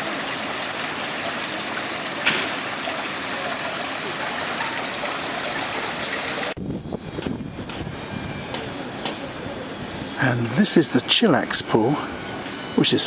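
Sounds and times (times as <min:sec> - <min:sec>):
cascading water: 0:00.0 - 0:06.6.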